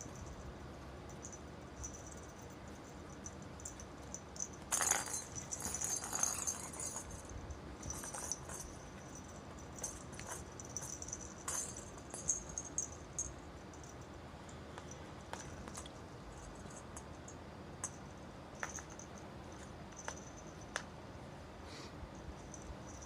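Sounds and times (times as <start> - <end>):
cat toy rattling: 3.2 - 14.0.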